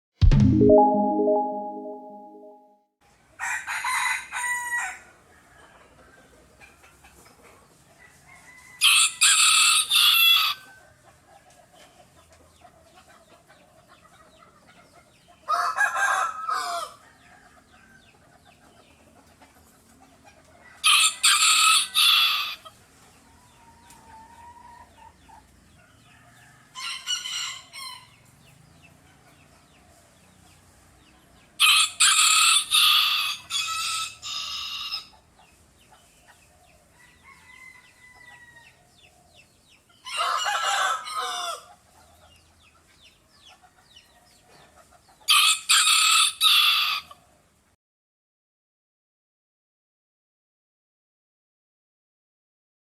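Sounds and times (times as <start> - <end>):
faint backyard sounds: 0.8 - 47.8
roosters crowing: 8.4 - 10.6, 15.5 - 17.2, 20.8 - 22.6, 31.6 - 35.1, 40.0 - 41.7.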